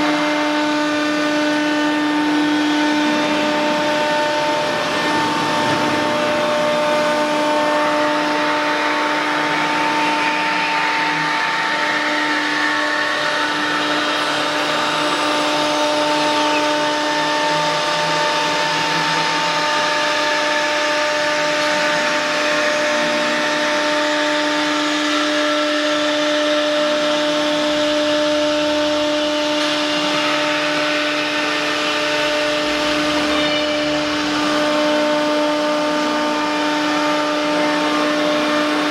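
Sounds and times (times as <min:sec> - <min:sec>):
hissing cutting noise: 0:00.0 - 0:26.2
router spindle high-pitched hum: 0:00.0 - 0:38.9.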